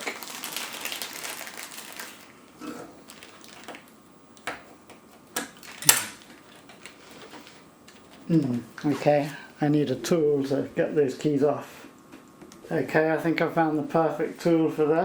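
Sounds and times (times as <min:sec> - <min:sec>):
rustling and scraping of keycaps: 0:04.6 - 0:09.2.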